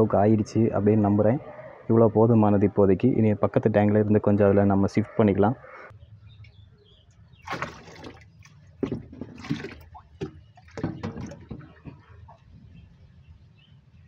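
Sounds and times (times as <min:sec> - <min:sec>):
water pouring into fish tank: 0:09.4 - 0:11.6.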